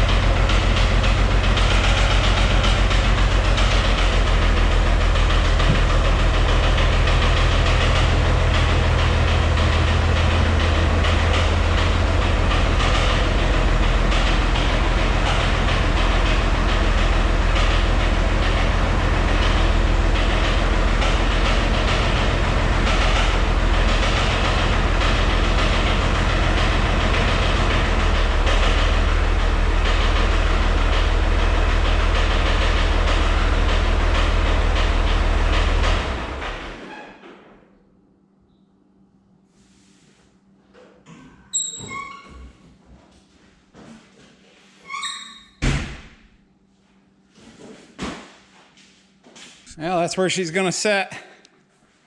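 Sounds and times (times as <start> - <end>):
fast rhythmic engine knock: 0.0 - 36.8
diesel tractor engine running: 0.0 - 36.9.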